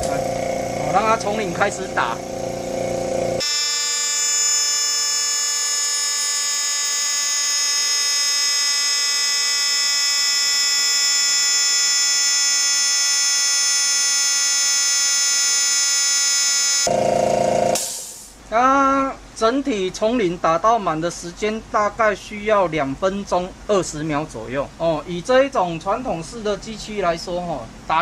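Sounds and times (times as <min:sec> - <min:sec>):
air compressor whining: 0:00.0 - 0:18.3.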